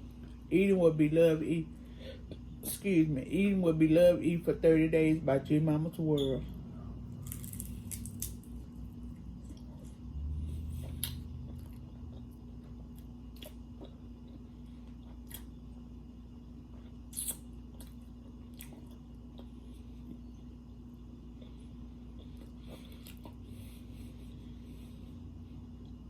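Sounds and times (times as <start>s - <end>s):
steady low hum: 0.0s - 26.0s
person chewing food: 6.9s - 15.8s, 16.6s - 20.3s, 21.0s - 26.0s.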